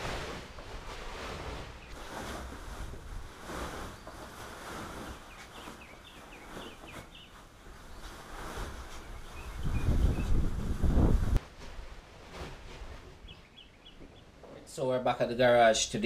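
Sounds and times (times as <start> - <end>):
bird chirping: 5.1 - 8.2, 8.9 - 10.5, 13.2 - 14.3
wind on microphone: 7.9 - 11.4.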